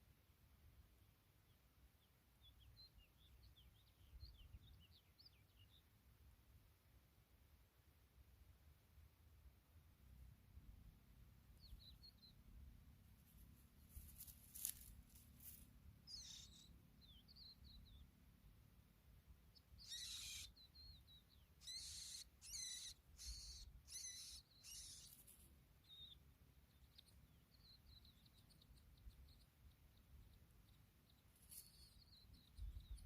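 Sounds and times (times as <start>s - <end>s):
skylarks chirping and trilling: 2.4s - 5.9s, 11.6s - 12.5s, 16.0s - 18.2s, 19.5s - 33.0s.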